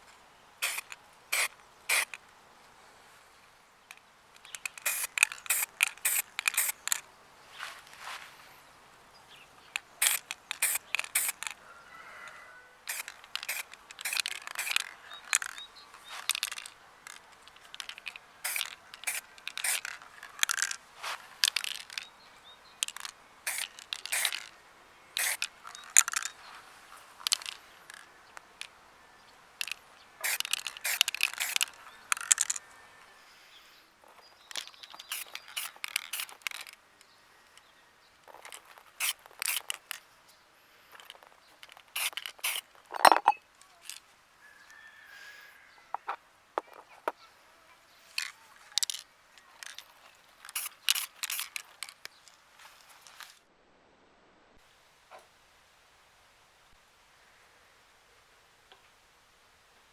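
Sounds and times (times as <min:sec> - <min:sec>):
hard objects clicking and scraping: 0:00.6 - 0:02.2, 0:03.9 - 0:07.1, 0:09.6 - 0:11.6, 0:12.9 - 0:22.2, 0:22.8 - 0:24.6, 0:25.2 - 0:28.8, 0:29.6 - 0:32.8, 0:34.0 - 0:36.8, 0:37.6 - 0:40.1, 0:40.9 - 0:44.1, 0:48.1 - 0:52.4.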